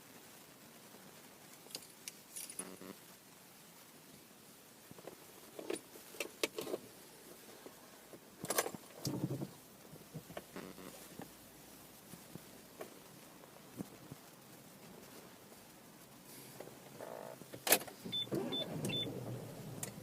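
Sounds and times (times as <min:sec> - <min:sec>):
clicking and rattling in car: 0:08.4 - 0:10.5, 0:17.4 - 0:20.0.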